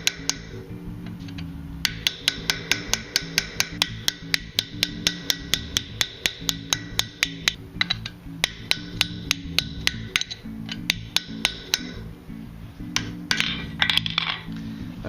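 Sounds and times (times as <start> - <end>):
background music: 0.0 - 15.0
hammer striking steel chisel: 1.8 - 12.0.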